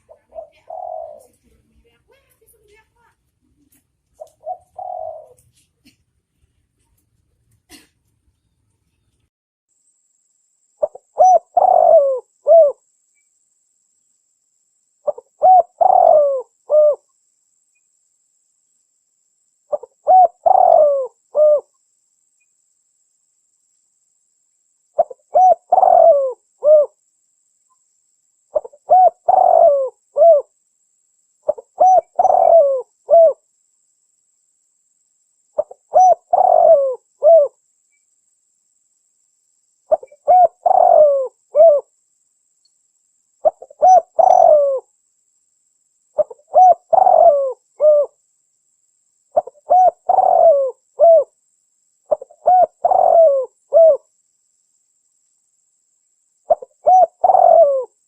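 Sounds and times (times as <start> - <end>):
dove cooing: 0.0 - 1.4, 4.2 - 5.5, 10.8 - 12.8, 15.0 - 17.0, 19.7 - 21.7, 25.0 - 27.0, 28.5 - 30.5, 31.5 - 33.4, 35.6 - 37.6, 39.9 - 41.9, 43.4 - 44.9, 46.2 - 48.2, 49.3 - 51.3, 52.1 - 54.1, 56.5 - 58.0.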